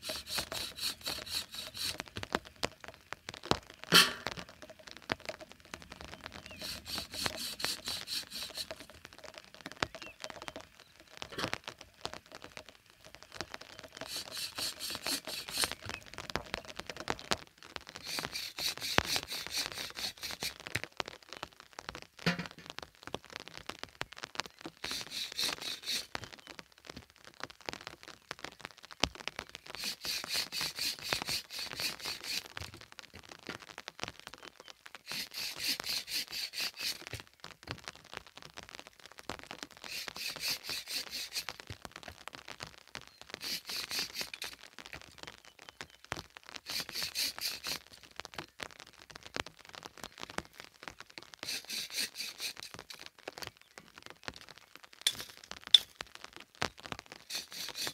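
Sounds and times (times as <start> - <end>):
rapid high-pitched ticking: 0.0 - 2.3, 6.3 - 9.0, 14.0 - 16.1, 18.0 - 20.6, 24.8 - 26.2, 29.7 - 32.5, 35.1 - 37.2, 39.8 - 41.6, 43.4 - 44.6, 46.7 - 47.9, 51.4 - 52.9, 57.3 - 57.9
wood fire crackling and popping: 0.0 - 57.9.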